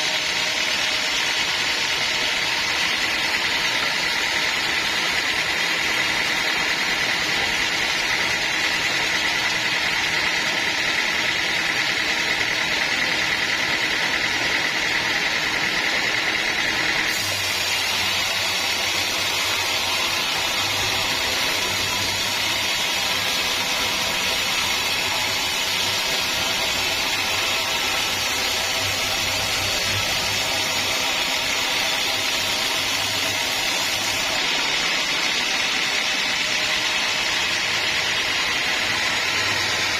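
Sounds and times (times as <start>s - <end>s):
sawmill machinery whining: 0.0s - 39.9s.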